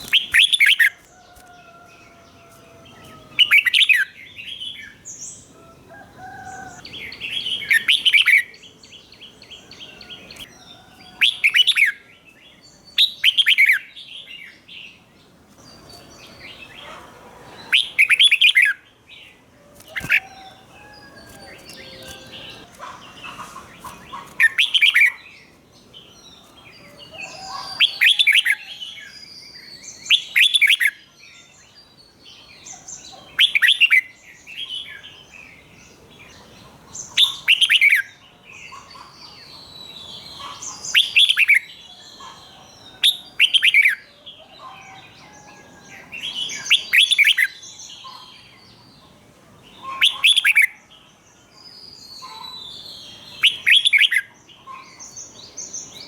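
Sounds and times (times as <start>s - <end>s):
bird singing bright phrases: 0.0s - 56.0s
faint bird chirps and whistles: 51.9s - 54.9s.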